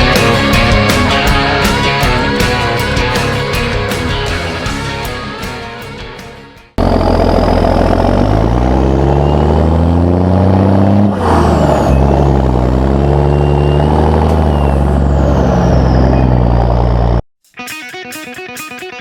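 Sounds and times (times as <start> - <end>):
diesel farm vehicle engine: 0.0 - 5.6, 6.7 - 17.3.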